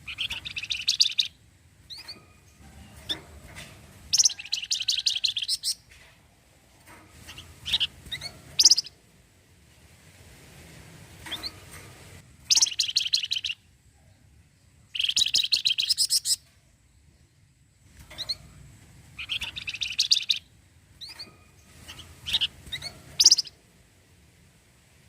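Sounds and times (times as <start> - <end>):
bird chirps: 0.0 - 3.2, 4.1 - 5.9, 7.2 - 9.0, 12.4 - 14.2, 14.9 - 18.6, 19.2 - 23.6
songbird buzzy trills: 0.0 - 5.9, 7.1 - 9.0, 12.4 - 13.8, 14.6 - 23.6.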